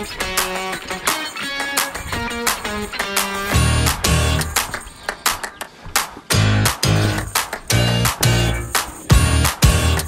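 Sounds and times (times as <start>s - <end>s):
heavy bass notes: 3.5s - 4.6s, 6.3s - 10.0s.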